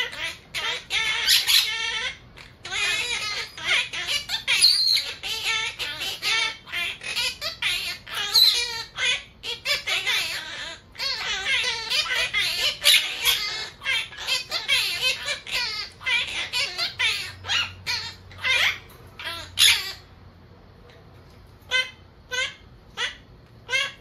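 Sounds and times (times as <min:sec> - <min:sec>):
parakeet chattering speech-like: 0:00.0 - 0:20.2, 0:21.6 - 0:24.0.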